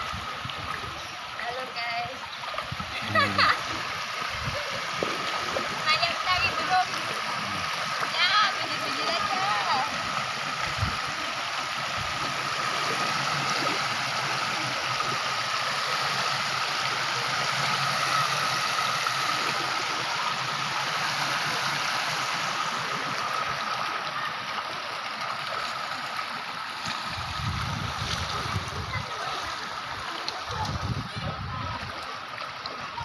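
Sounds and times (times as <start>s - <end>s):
floodwater rushing and gurgling: 0.0s - 33.0s.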